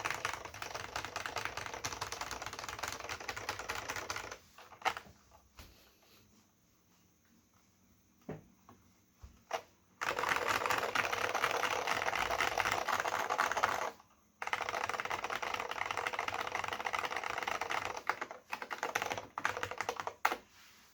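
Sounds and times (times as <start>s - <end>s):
keyboard typing: 0.0s - 5.1s, 9.5s - 20.4s.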